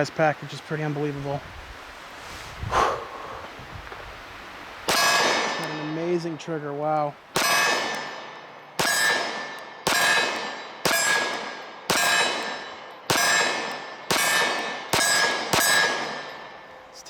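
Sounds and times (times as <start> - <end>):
pistol shots: 4.9 - 6.0, 7.3 - 16.6
metallic ring: 7.4 - 17.0.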